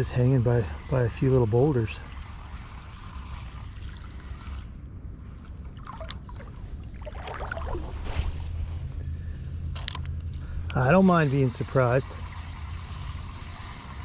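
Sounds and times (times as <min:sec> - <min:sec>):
creek water trickling: 0:00.4 - 0:08.6, 0:11.2 - 0:14.0
steady low rumble: 0:03.4 - 0:14.0
small splashes: 0:05.5 - 0:08.6.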